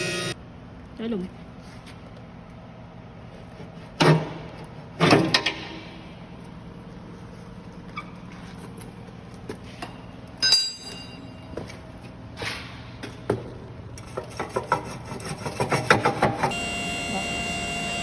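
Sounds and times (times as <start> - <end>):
compactor machine humming: 0.0 - 0.4, 16.1 - 18.0
metallic clank ringing: 10.4 - 11.5.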